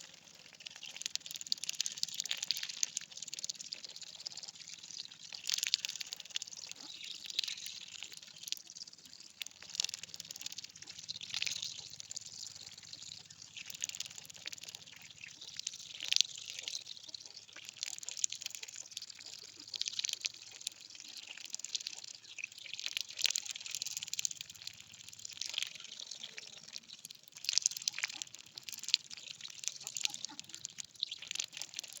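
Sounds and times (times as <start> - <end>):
water splashing and dripping: 0.0 - 32.0.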